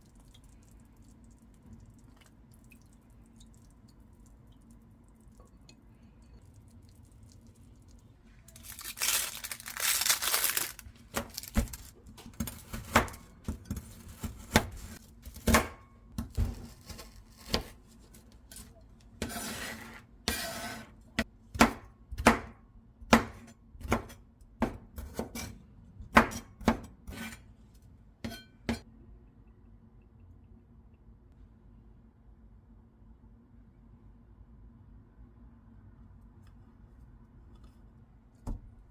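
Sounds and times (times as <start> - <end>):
plastic package crinkling: 8.4 - 12.0.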